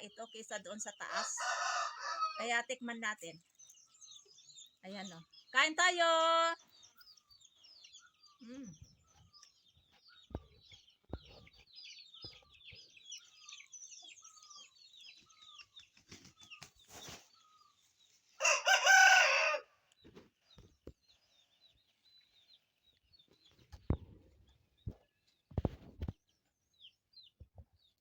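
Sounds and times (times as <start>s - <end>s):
small birds chirping: 0.0s - 28.0s
rooster crowing: 1.2s - 2.4s, 18.4s - 19.8s.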